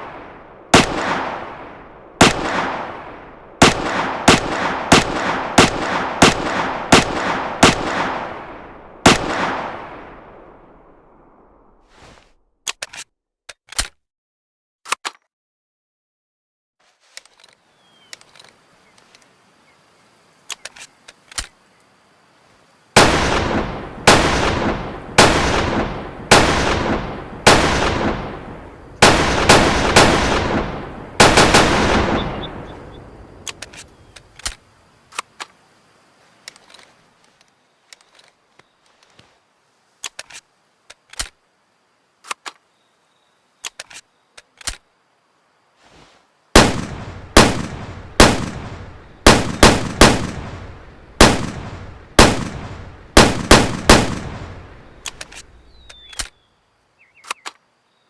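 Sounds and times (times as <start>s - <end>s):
rifle shots echoing: 0.0s - 10.7s, 23.0s - 33.8s, 46.6s - 55.4s.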